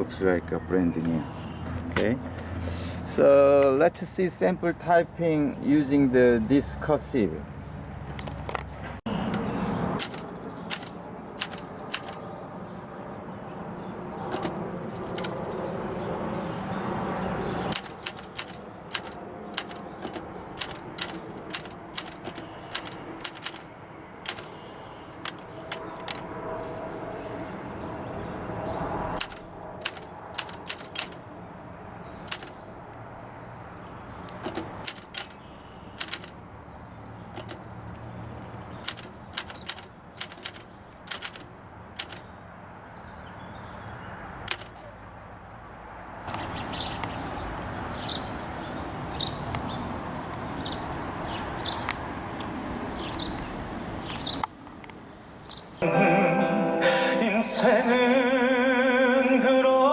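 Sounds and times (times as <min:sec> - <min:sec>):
manual typewriter key clacks: 0:09.3 - 0:12.2, 0:14.3 - 0:15.4, 0:17.7 - 0:24.5, 0:25.2 - 0:26.3, 0:29.2 - 0:31.2, 0:32.2 - 0:32.6, 0:34.3 - 0:36.4, 0:37.3 - 0:37.6, 0:38.8 - 0:42.3, 0:44.5 - 0:44.8.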